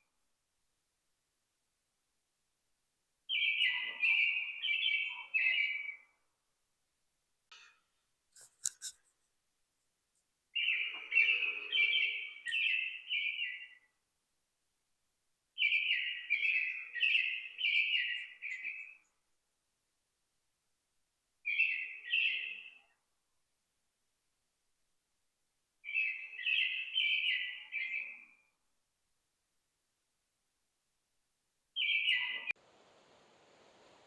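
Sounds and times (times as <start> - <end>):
songbird singing: 3.3 - 6.2, 10.5 - 14.0, 15.6 - 19.2, 21.4 - 23.0, 25.8 - 28.5, 31.8 - 32.6.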